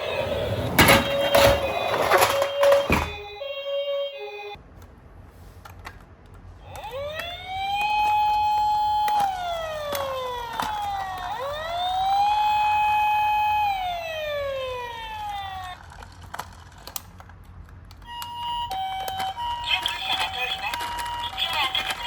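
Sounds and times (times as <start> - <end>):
wailing siren: 0.0 - 4.6, 6.6 - 15.8.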